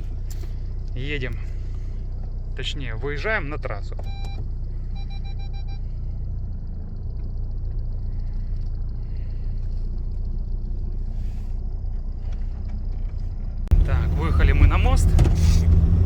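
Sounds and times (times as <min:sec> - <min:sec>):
diesel van engine rumble: 0:00.0 - 0:16.0
short pulsed beeping: 0:04.1 - 0:05.9.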